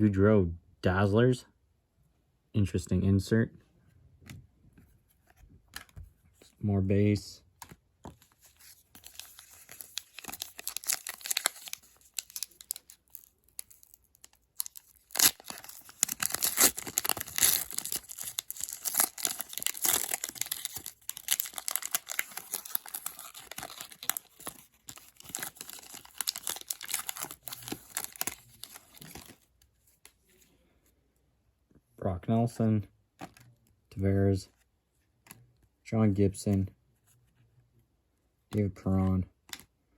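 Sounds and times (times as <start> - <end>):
wrapper tearing and crinkling: 8.6 - 29.4.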